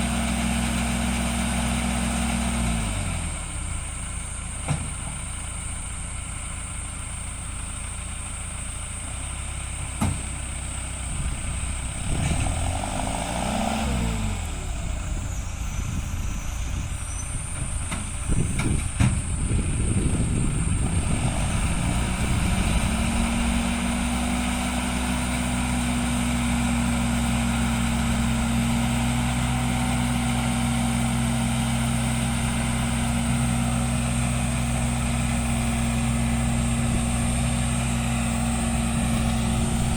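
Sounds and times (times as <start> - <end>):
tractor diesel engine running: 0.0 - 39.9
steady higher hum: 14.6 - 25.8.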